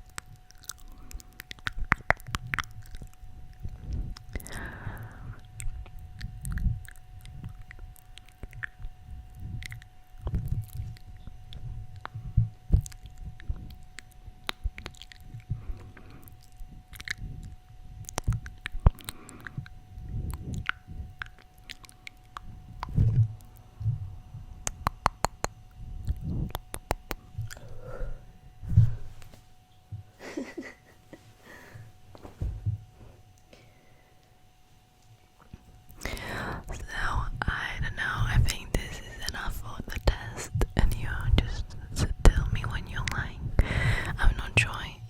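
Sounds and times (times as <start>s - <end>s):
breathing into microphone: 3.8s - 5.5s, 27.6s - 29.2s, 36.0s - 36.7s, 43.4s - 44.3s
soft low thumps: 8.4s - 16.0s, 22.3s - 30.2s, 31.8s - 33.2s.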